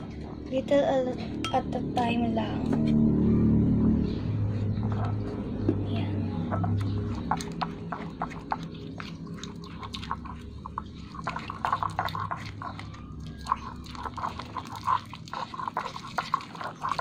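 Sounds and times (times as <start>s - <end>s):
steady low hum: 0.0s - 16.3s
slime squelching in a bowl: 4.6s - 17.0s.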